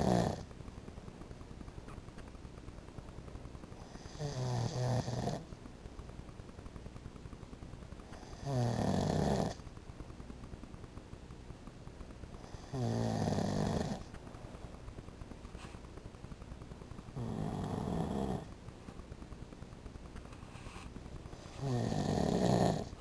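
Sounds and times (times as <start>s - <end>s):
man snoring: 0.0s - 0.4s, 4.0s - 5.4s, 8.3s - 9.6s, 12.6s - 14.0s, 17.2s - 18.5s, 21.6s - 22.9s.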